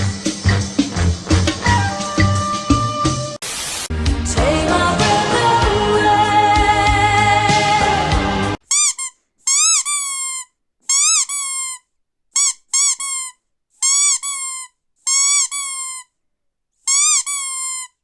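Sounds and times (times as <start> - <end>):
high-pitched squeaks: 8.6 - 16.1, 16.9 - 18.0.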